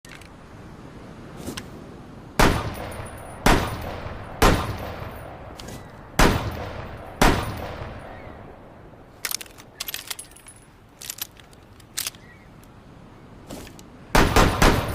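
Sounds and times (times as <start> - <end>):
revolver gunshots with echo: 2.4 - 8.6, 14.1 - 14.9.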